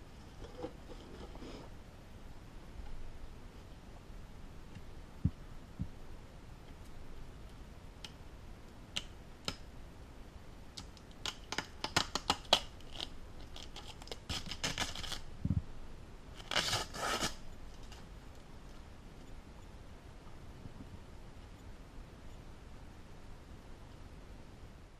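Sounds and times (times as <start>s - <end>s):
packaging crinkling: 11.2s - 15.3s.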